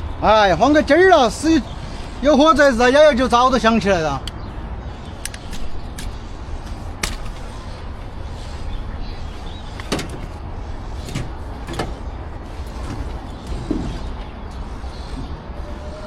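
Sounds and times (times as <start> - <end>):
steady low rumble: 0.8 - 15.6
sharp knocks: 5.4 - 7.8.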